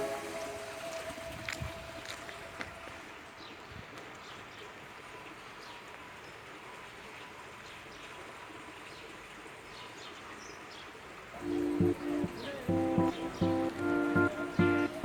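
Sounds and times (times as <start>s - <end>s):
small birds chirping: 0.0s - 15.0s
steady faint hiss: 0.0s - 15.0s.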